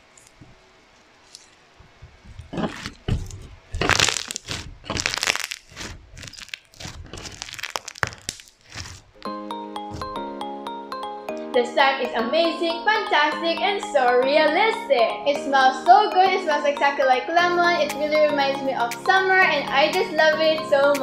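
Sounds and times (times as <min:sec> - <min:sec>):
slime crackling and crunching: 0:02.5 - 0:09.3
chiming music tune: 0:09.3 - 0:21.0.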